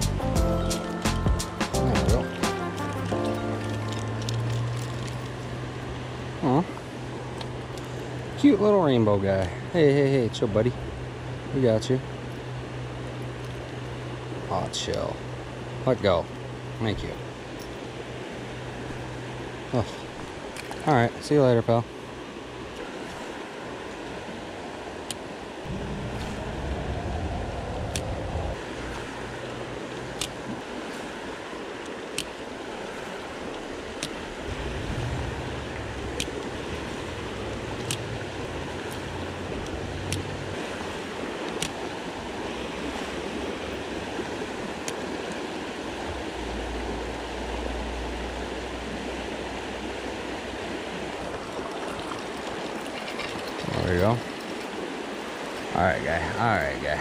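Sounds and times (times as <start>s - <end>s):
stream flowing: 0.0s - 57.0s
low rumble: 25.6s - 28.7s, 34.3s - 40.6s.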